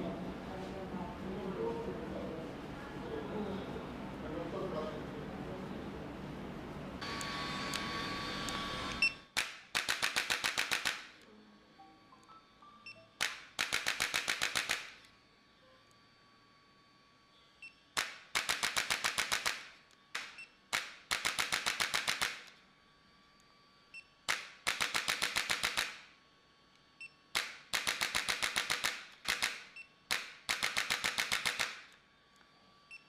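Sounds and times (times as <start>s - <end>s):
rapid sharp mechanical clicks: 9.3s - 11.2s, 13.2s - 15.1s, 17.9s - 22.6s, 24.2s - 26.1s, 27.3s - 32.0s.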